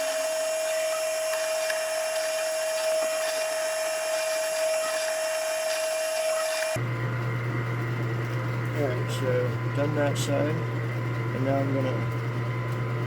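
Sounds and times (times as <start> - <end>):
electric drill whining: 0.0 - 6.8.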